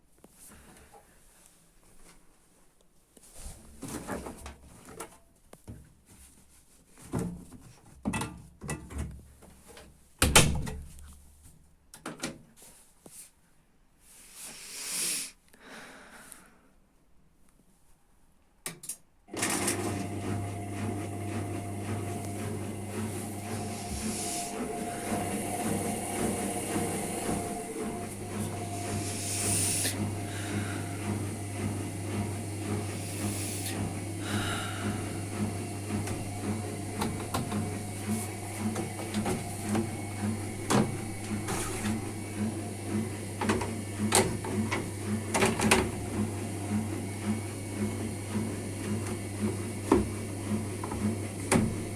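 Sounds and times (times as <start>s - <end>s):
washing machine humming: 19.3s - 51.9s
hissing water washes: 21.8s - 31.9s.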